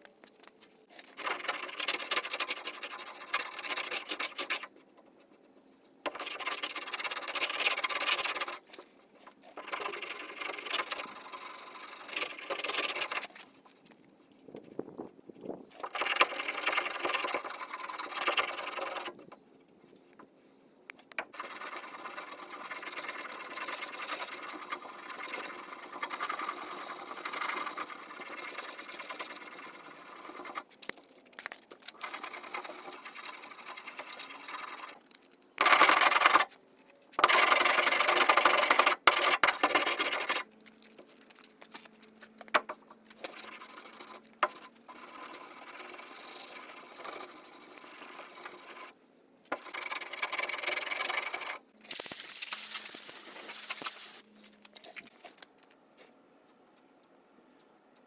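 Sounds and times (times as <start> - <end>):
sanding body filler: 21.4 - 30.6, 43.2 - 49.0, 49.6 - 52.2.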